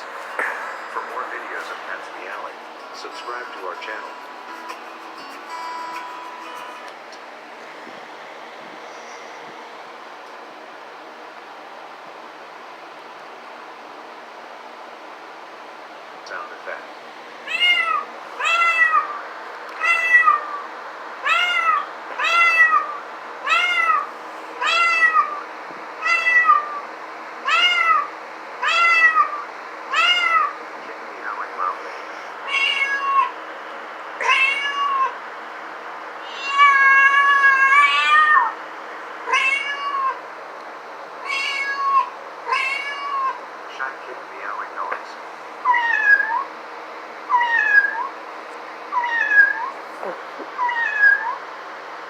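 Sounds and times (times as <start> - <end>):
cat meowing: 17.4 - 19.2, 19.8 - 25.4, 26.0 - 30.6, 32.4 - 33.4, 34.2 - 35.2, 36.2 - 38.6, 39.3 - 40.2, 41.2 - 43.4, 45.6 - 46.5, 47.3 - 48.1, 48.9 - 51.4.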